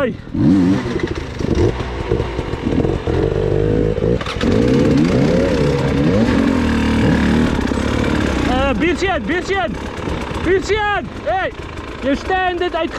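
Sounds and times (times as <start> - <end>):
motorcycle engine revving: 0.0 - 12.9.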